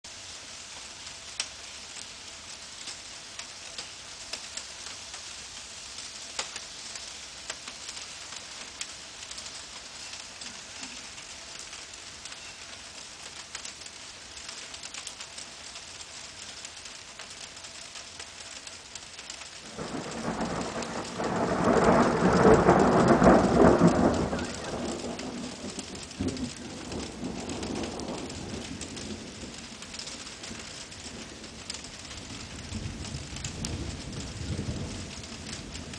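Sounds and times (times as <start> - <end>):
steady rain: 0.0 - 35.9
thunder rumbling: 19.6 - 35.9.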